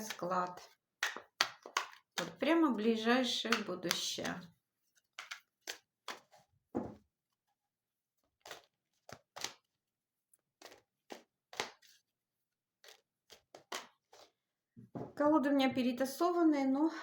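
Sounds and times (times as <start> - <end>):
cards rustling and tapping: 0.0 - 2.5, 3.2 - 6.5, 8.2 - 12.1, 12.7 - 14.4.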